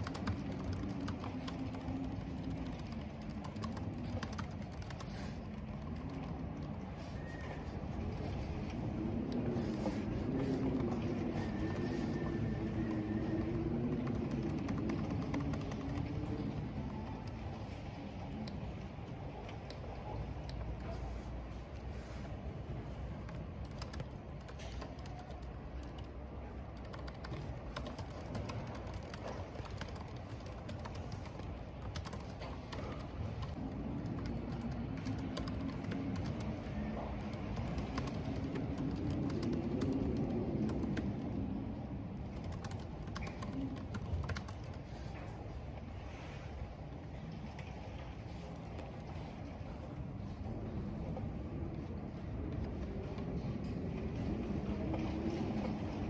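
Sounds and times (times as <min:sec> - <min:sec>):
typing on a keyboard: 0:00.0 - 0:07.5, 0:10.3 - 0:18.6, 0:23.2 - 0:41.5, 0:42.1 - 0:45.0.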